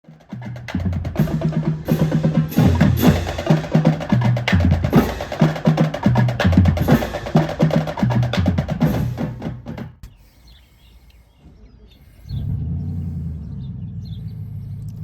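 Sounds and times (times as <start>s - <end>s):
fast percussion beat: 0.0s - 10.1s.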